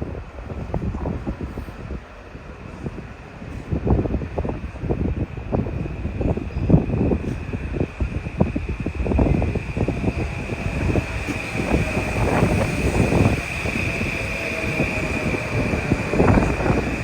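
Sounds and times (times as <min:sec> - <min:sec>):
train wheels clattering over rails: 0:06.2 - 0:17.0
high-pitched whine: 0:08.0 - 0:17.0.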